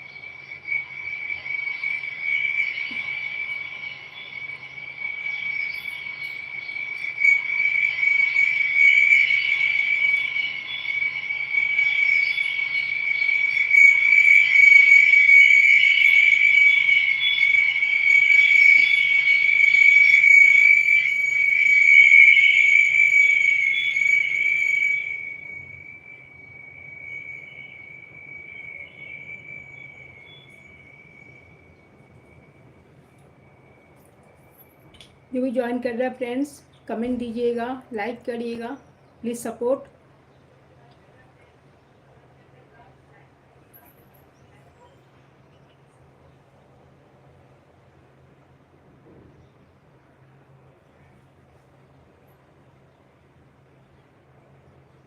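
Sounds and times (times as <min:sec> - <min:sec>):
rough insect chirring: 0:00.0 - 0:35.8
crickets trilling: 0:00.0 - 0:55.0.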